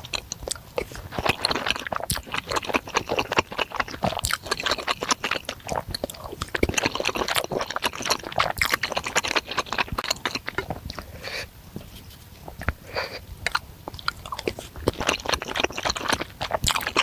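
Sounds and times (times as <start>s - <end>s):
meatballs being chewed: 0.0s - 17.0s.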